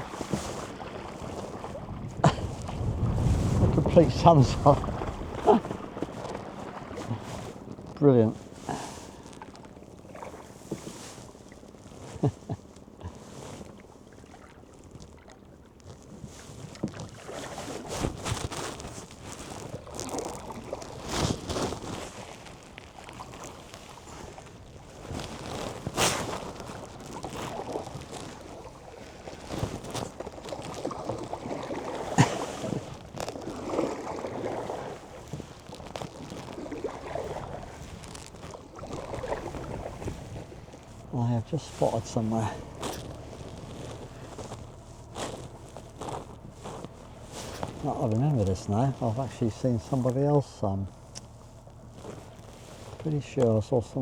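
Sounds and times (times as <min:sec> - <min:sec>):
paddle knocking against hull: 0:00.0 - 0:11.8, 0:25.7 - 0:41.2
paddle splashing in water: 0:00.0 - 0:54.0.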